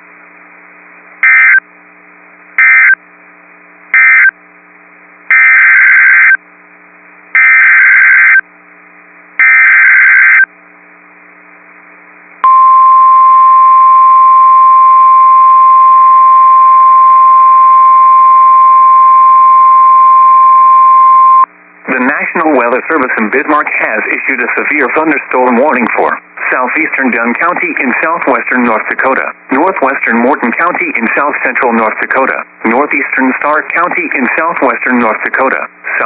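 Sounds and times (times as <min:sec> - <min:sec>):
steady warning alarm tone: 0:01.2 - 0:01.6, 0:02.6 - 0:03.0, 0:04.0 - 0:04.3, 0:05.3 - 0:06.4, 0:07.4 - 0:08.4, 0:09.4 - 0:10.5, 0:12.4 - 0:21.5
faint radio hum: 0:21.8 - 0:36.0.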